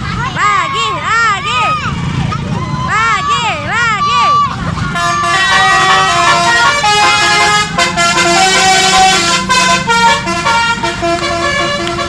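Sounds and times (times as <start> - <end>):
musical bus horns playing a tune: 4.8 - 12.0.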